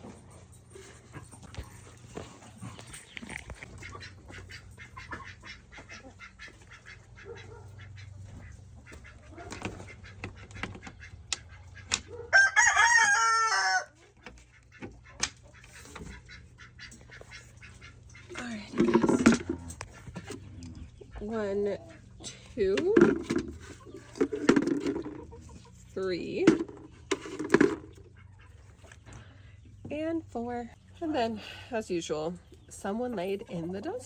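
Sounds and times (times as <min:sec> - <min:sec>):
chickens clucking: 0:00.0 - 0:34.0
low steady hum: 0:00.0 - 0:34.0
rooster crowing: 0:12.3 - 0:14.0.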